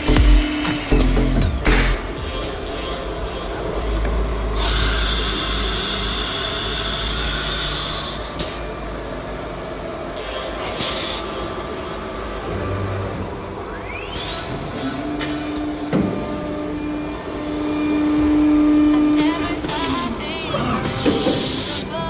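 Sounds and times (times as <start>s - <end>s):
machine whine rising in pitch: 0.0s - 9.4s, 11.2s - 21.9s
milling machine running: 0.0s - 22.0s.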